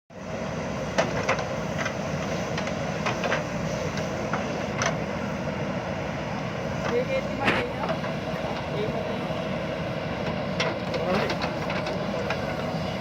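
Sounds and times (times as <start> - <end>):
diesel engine running: 0.1 - 13.0.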